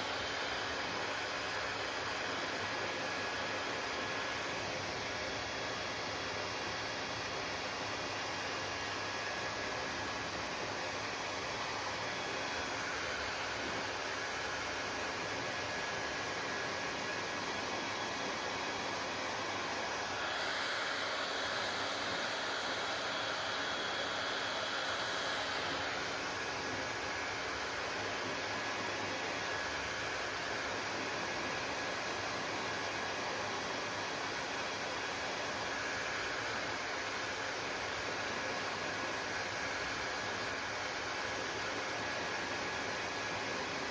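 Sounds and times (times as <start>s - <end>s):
faint motor whine: 0.0s - 43.9s
hair dryer blowing air: 0.0s - 43.9s.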